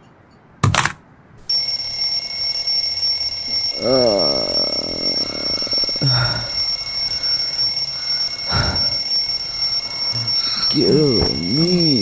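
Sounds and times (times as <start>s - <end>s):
high electronic alarm tone: 1.5s - 12.0s
person making juddering vocal sound: 3.6s - 7.2s, 8.5s - 9.1s, 10.2s - 12.0s.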